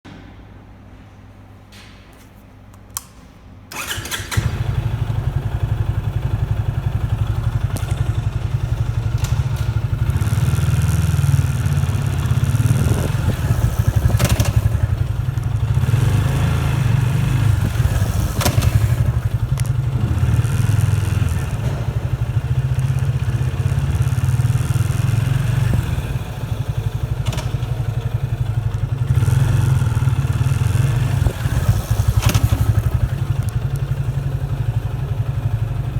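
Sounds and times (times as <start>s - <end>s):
motorcycle engine running: 3.8s - 35.9s.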